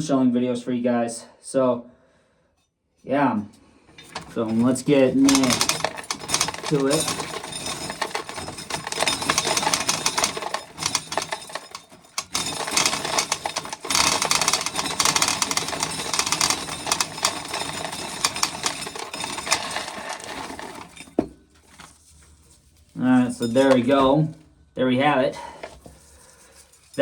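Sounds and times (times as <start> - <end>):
corn kernels clicking and rattling: 4.0 - 21.2.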